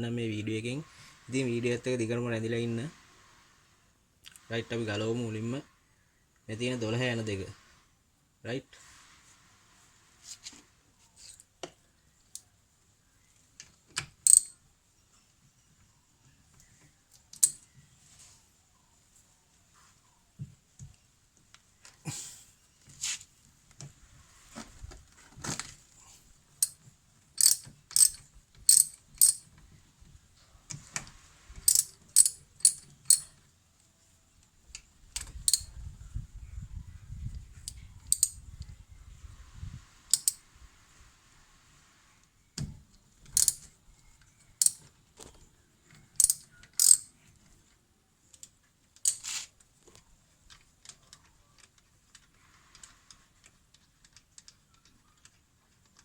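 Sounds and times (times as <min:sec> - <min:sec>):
metallic clicks of hand tools: 0:14.0 - 0:14.6, 0:17.2 - 0:17.6, 0:27.4 - 0:29.5, 0:31.6 - 0:33.4, 0:35.2 - 0:35.7, 0:37.7 - 0:38.4, 0:40.1 - 0:40.4, 0:43.3 - 0:43.7, 0:44.6 - 0:44.9, 0:46.2 - 0:47.1, 0:48.4 - 0:49.4.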